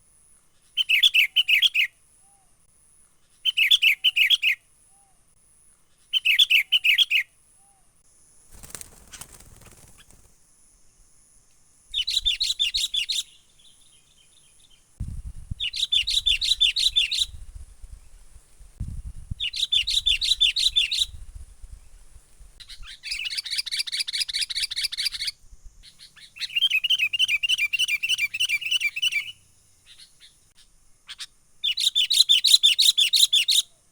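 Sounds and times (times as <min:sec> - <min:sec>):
bulbul chattering call: 0:11.9 - 0:13.7, 0:15.6 - 0:17.5, 0:19.4 - 0:21.2, 0:22.6 - 0:33.7.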